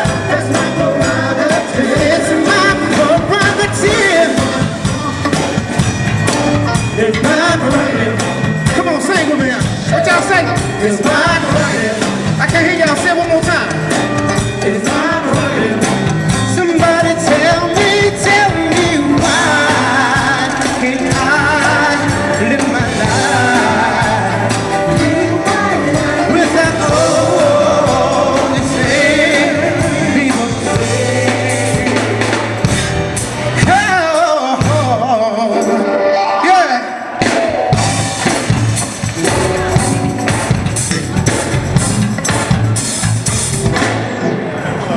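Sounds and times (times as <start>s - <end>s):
lead singer singing: 0.0s - 5.8s, 6.7s - 13.7s, 14.4s - 32.8s
live band playing: 0.0s - 44.9s.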